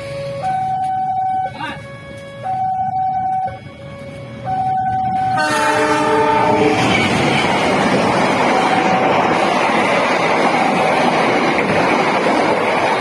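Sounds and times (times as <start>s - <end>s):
locomotive air horn chord: 1.8s - 7.2s
train rushing past: 2.8s - 13.0s.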